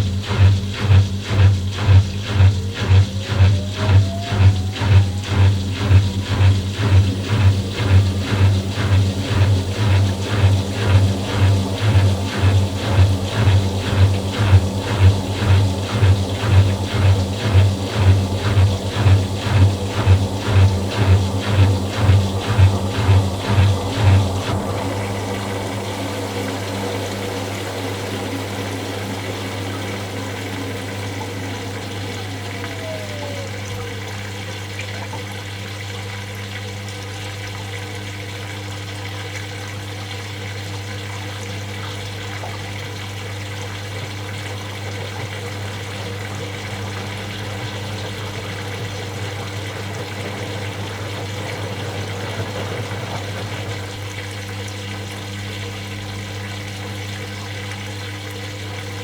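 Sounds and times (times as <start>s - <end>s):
washing machine running: 0.0s - 59.0s
water rushing: 0.0s - 59.0s
falling tone: 2.6s - 10.5s, 28.4s - 34.4s.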